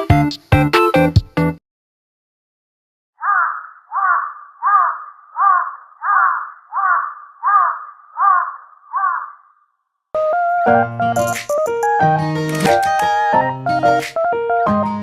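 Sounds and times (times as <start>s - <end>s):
crow cawing: 3.2s - 9.8s.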